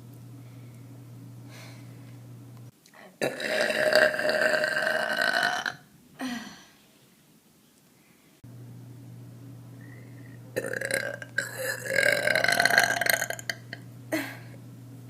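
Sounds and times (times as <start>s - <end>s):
person burping: 3.2s - 6.7s, 10.6s - 14.6s.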